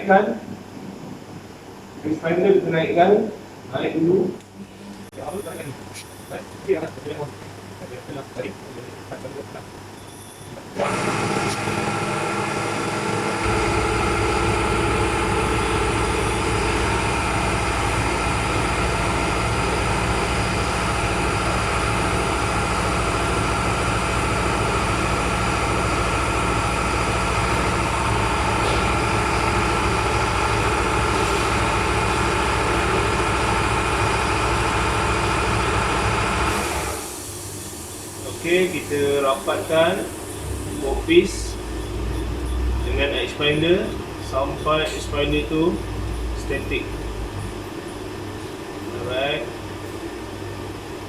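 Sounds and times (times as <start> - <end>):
milling machine hum and whine: 0.0 - 51.0
deeper machine hum: 10.6 - 51.0.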